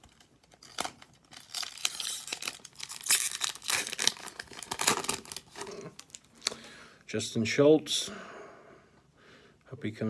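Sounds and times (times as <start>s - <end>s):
foil wrapper tearing and crinkling: 0.0s - 6.7s.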